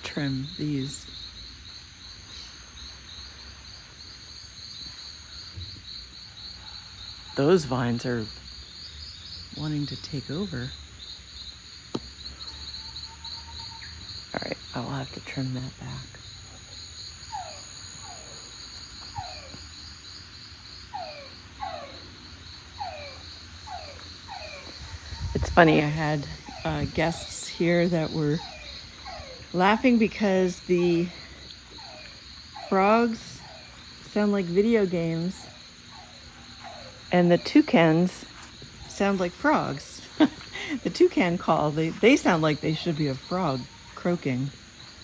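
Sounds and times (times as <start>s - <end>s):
crickets chirping: 0.0s - 45.0s
pulsing insect chorus: 0.0s - 45.0s
falling yelp-like animal calls: 17.3s - 19.8s, 20.9s - 44.6s.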